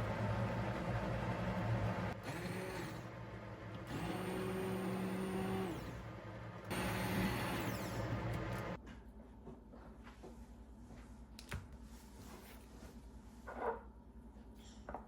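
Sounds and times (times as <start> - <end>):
blender motor whirring: 2.2 - 3.1, 3.8 - 8.8.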